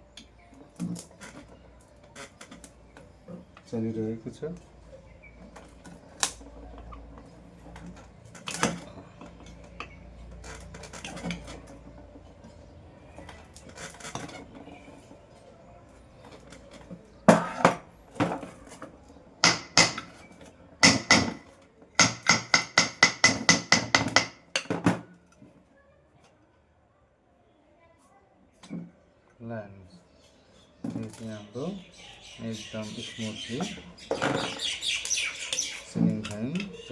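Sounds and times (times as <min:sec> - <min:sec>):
metal tools tapping on metal: 0:19.4 - 0:20.2, 0:20.8 - 0:25.0.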